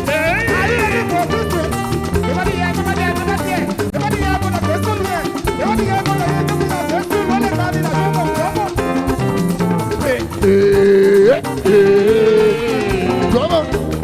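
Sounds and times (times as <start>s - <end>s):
upbeat gospel band music: 0.0s - 14.0s.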